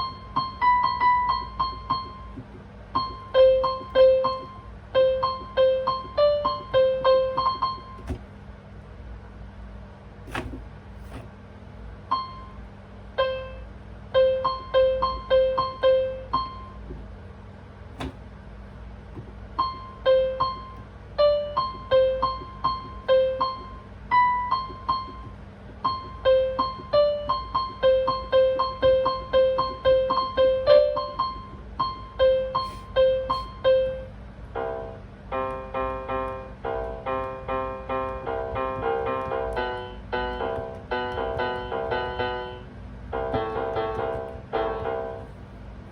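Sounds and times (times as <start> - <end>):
slow single-note piano melody: 0.0 - 8.2, 13.2 - 17.0, 19.5 - 45.4
faint knocks: 18.0 - 18.3.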